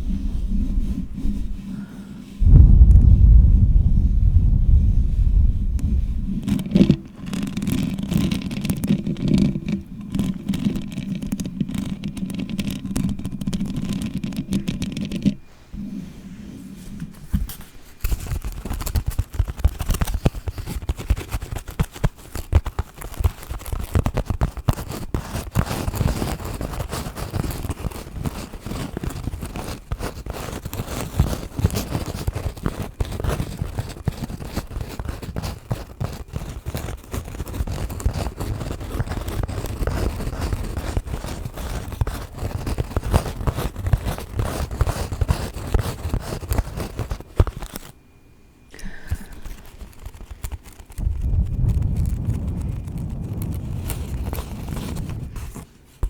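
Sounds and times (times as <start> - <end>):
fingernails scratching a microphone: 0.0 - 15.4, 16.4 - 47.9, 49.1 - 56.0.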